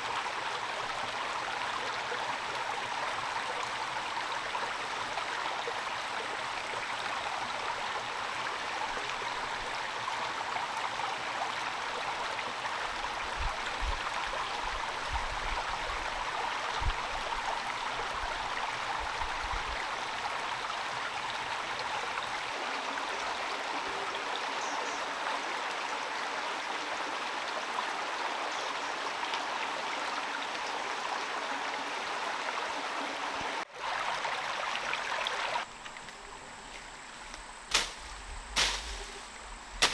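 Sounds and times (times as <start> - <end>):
steady rain falling: 35.6 - 39.9.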